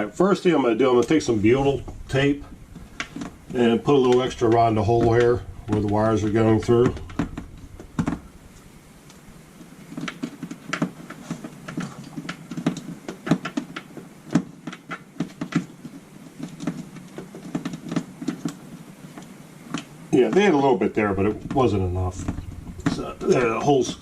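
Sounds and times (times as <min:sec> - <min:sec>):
small clicks taps and rustles: 0:10.0 - 0:20.5.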